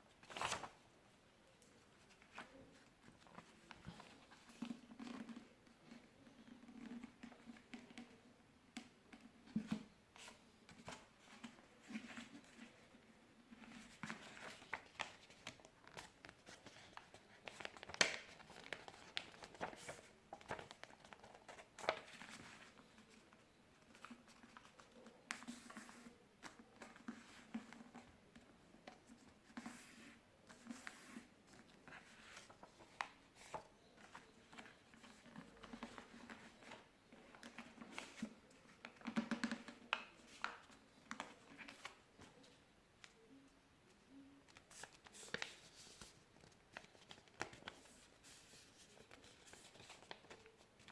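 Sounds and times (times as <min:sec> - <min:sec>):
paper rustling and crinkling: 0:00.2 - 0:00.8, 0:13.5 - 0:28.1, 0:28.8 - 0:43.2, 0:44.5 - 0:50.9.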